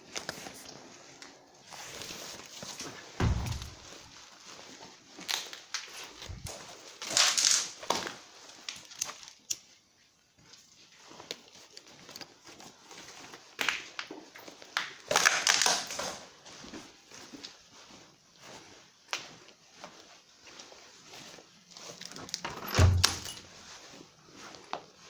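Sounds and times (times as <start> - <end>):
footsteps crunching on gritty floor: 1.9 - 5.4.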